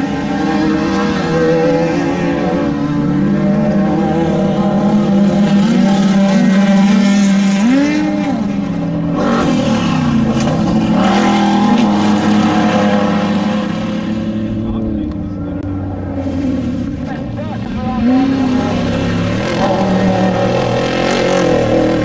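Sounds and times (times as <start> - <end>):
race vehicle engines revving: 0.0 - 22.0.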